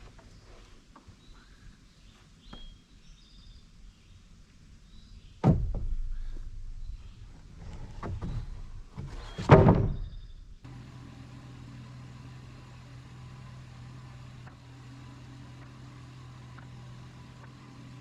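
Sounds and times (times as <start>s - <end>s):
heavy thump with low rumble: 5.4s - 7.0s, 9.5s - 10.3s.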